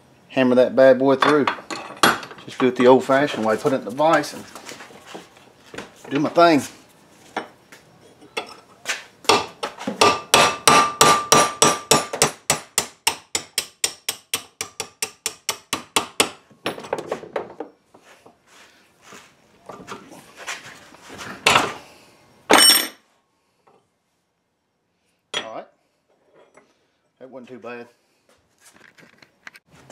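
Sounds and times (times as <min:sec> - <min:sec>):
hammer striking steel chisel: 0:09.3 - 0:16.4.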